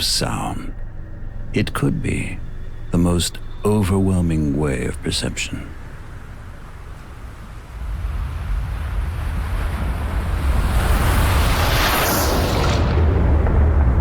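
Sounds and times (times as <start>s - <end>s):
deep rumble: 0.0s - 14.0s.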